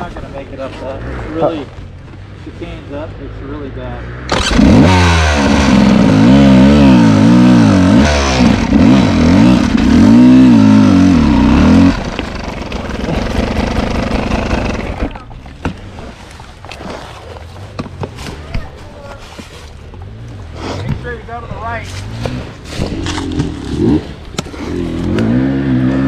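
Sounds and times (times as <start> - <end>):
dirt bike engine revving: 4.2 - 15.3, 21.8 - 26.0.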